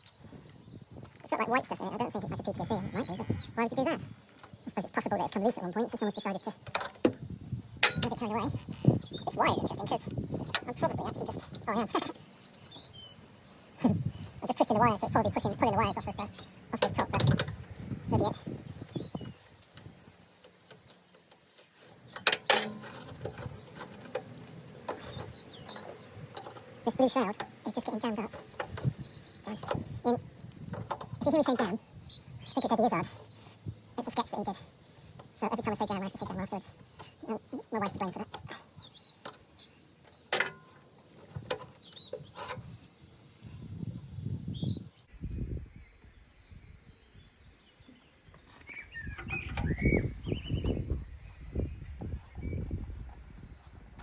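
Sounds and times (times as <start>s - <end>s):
small birds chirping: 0.0s - 54.0s
clicks and rustling of hands working: 19.6s - 27.6s.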